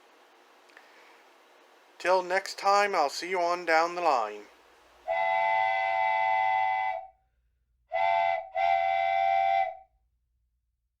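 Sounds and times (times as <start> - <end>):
steam locomotive whistle blasts: 5.0 - 7.2, 7.9 - 9.9.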